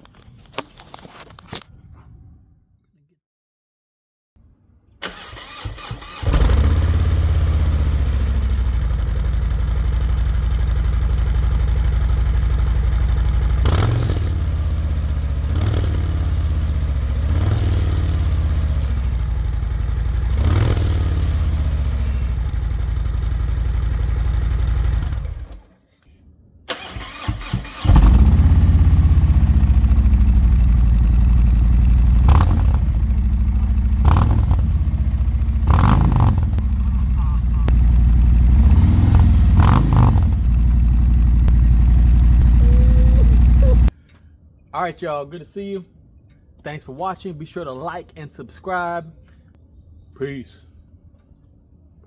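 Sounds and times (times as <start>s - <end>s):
motorcycle engine idling and revving: 5.4s - 25.7s, 27.1s - 44.0s.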